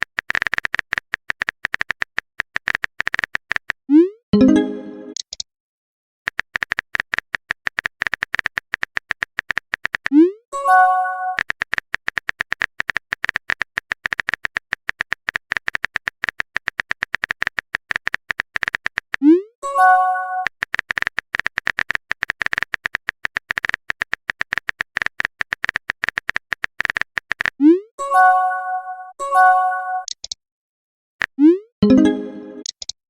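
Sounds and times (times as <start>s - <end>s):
phone keyboard typing clicks: 0.0s - 3.8s, 6.3s - 10.2s, 11.3s - 19.2s, 20.4s - 27.6s, 30.0s - 30.4s, 31.2s - 33.0s
message sent chime: 4.4s - 5.2s, 19.6s - 20.5s, 28.0s - 30.1s, 31.8s - 32.7s.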